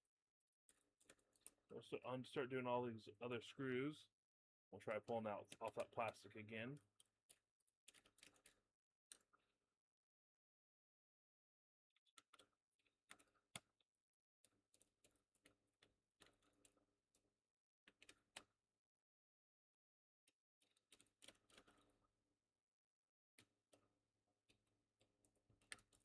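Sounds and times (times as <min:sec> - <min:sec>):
small parts being handled: 0:06.8 - 0:09.4, 0:12.0 - 0:17.2, 0:17.9 - 0:18.6, 0:20.3 - 0:22.1.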